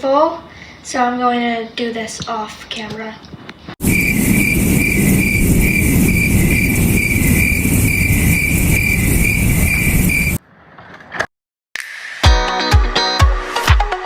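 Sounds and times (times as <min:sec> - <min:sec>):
wind on microphone rumble: 0:03.4 - 0:10.4
insect chirping: 0:03.8 - 0:10.4.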